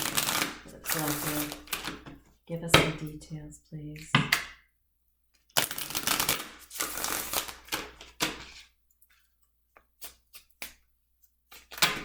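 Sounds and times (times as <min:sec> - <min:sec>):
cards being shuffled: 0:05.6 - 0:08.7.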